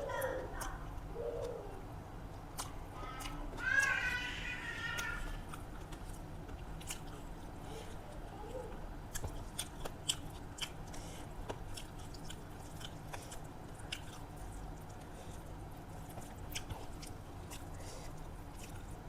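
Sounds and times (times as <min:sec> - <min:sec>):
person chewing food: 0:02.3 - 0:19.0
wet mouth clicks and smacks: 0:02.5 - 0:02.8.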